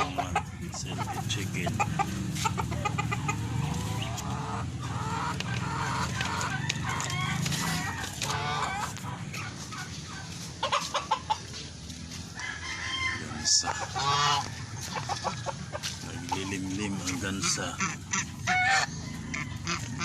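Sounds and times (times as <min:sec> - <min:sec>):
chickens clucking: 0:00.0 - 0:20.0
rooster crowing: 0:06.3 - 0:08.8, 0:12.3 - 0:15.7.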